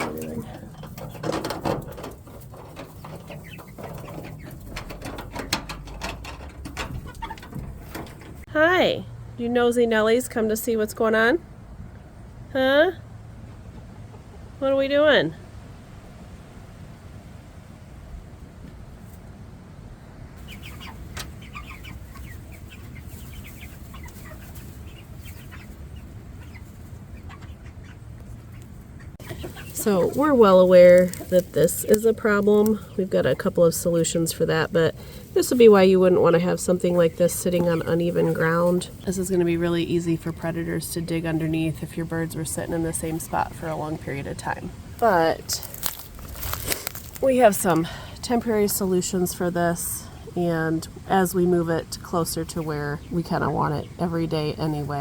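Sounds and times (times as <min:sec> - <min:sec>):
chickens clucking: 0:00.0 - 0:08.5, 0:13.3 - 0:14.9, 0:20.4 - 0:55.0
handling clicks and knocks: 0:00.0 - 0:08.5
low steady rumble: 0:00.0 - 0:55.0.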